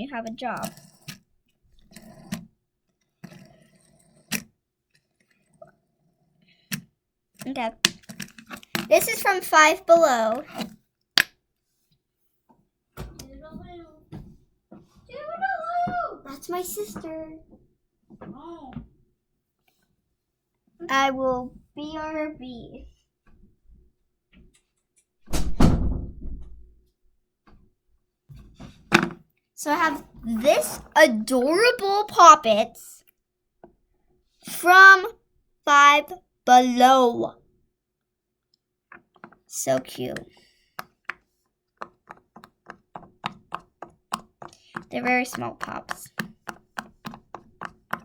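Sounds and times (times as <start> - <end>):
door shutting with heavy knocks: 25.3 - 26.6.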